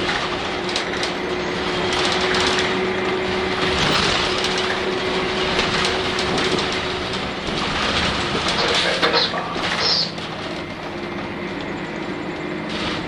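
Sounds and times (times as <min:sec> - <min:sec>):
bus engine under way: 0:00.0 - 0:13.0
interior rattles and clicks: 0:00.0 - 0:13.0
road noise: 0:00.0 - 0:13.0.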